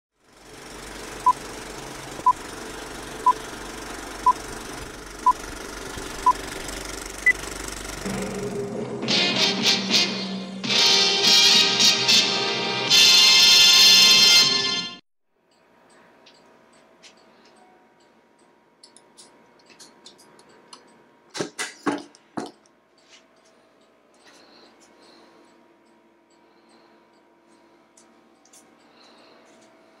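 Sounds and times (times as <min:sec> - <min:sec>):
music: 0:08.0 - 0:15.0.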